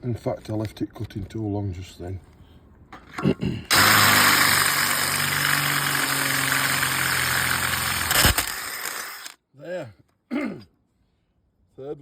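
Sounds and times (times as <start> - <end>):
electric drill boring steel: 3.7 - 9.4.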